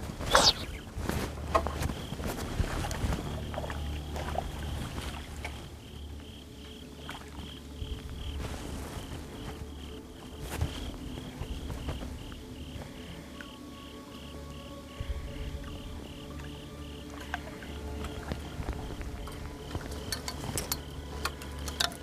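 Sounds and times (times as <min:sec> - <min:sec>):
insect chirping: 0:00.1 - 0:01.0, 0:01.6 - 0:22.0.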